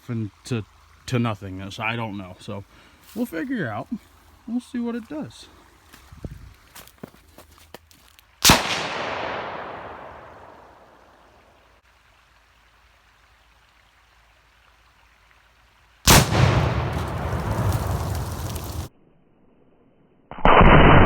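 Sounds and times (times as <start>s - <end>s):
loud outdoor blast echoing: 8.4s - 11.2s, 16.1s - 18.9s
heavy blast with deep rumble: 16.1s - 18.9s.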